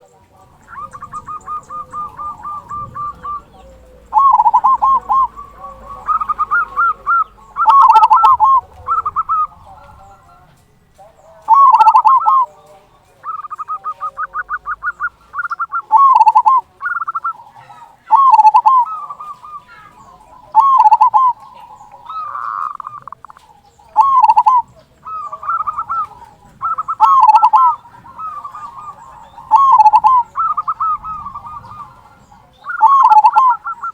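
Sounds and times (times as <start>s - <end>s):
dove cooing: 0.0s - 33.9s.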